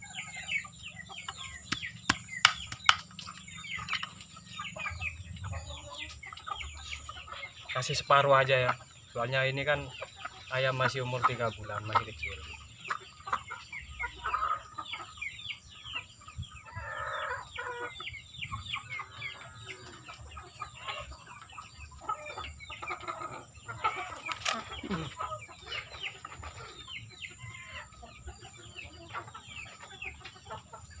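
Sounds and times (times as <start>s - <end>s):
chickens peeping and clucking: 0.0s - 31.0s
sharp click: 1.7s - 3.1s.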